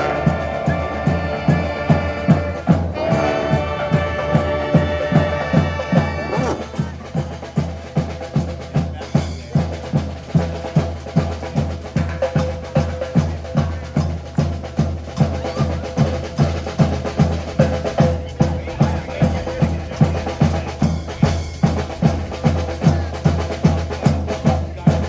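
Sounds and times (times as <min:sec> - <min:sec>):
brass band horns playing: 0:00.0 - 0:07.3
drums keeping steady beat: 0:00.0 - 0:25.0.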